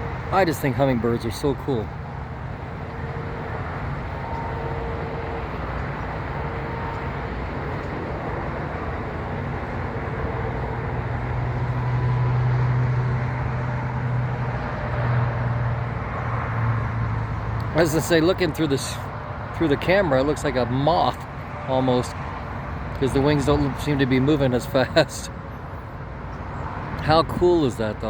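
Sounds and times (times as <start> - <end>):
heavy vehicle passing: 0.0 - 28.0
road traffic rumble: 0.0 - 28.0.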